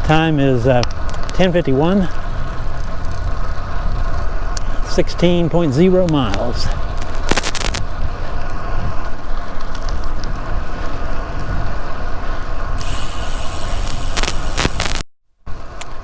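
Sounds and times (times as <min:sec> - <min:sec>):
road noise: 0:00.0 - 0:16.0
wind rushing over microphone: 0:00.8 - 0:15.0
bright hiss: 0:12.8 - 0:15.0
sharp clicks: 0:12.8 - 0:15.0.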